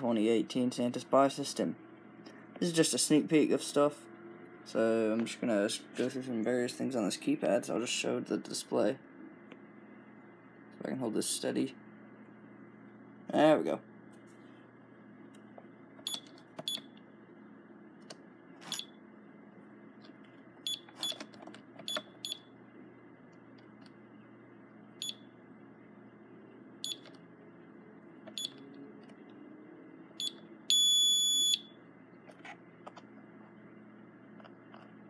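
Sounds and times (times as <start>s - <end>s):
keypad beeping chirps: 16.0s - 16.9s, 20.6s - 22.5s, 25.0s - 25.2s, 26.8s - 27.1s, 28.3s - 28.6s, 30.2s - 31.7s
long loud keypad beep: 30.2s - 31.7s.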